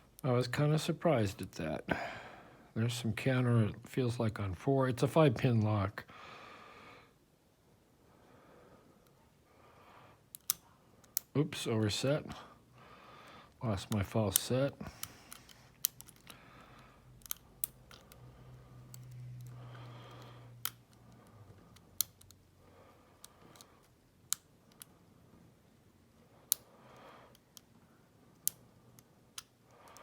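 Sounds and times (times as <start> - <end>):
lock pick clicks: 10.3 - 11.3, 13.9 - 16.4, 17.1 - 18.2.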